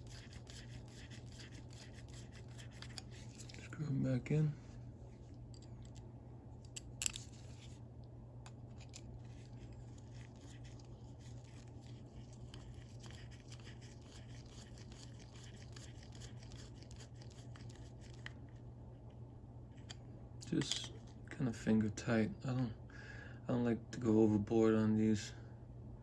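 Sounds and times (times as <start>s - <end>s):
metal scratching and small clicks: 0.0s - 3.8s, 5.3s - 6.0s, 6.6s - 7.8s, 8.4s - 18.4s, 19.7s - 21.1s
steady low hum: 0.0s - 26.0s.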